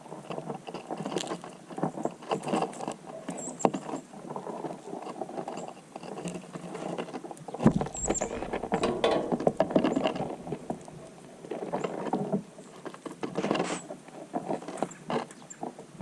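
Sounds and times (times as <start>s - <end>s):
birds pecking and fluttering: 0.0s - 16.0s
low rumble: 7.8s - 11.2s.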